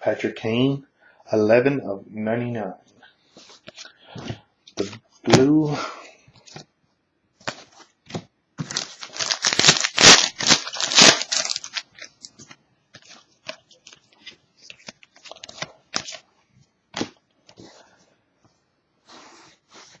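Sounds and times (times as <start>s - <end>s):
cards rustling and clicking: 6.4s - 6.7s, 7.4s - 16.3s
wrapper tearing and crinkling: 8.6s - 12.2s.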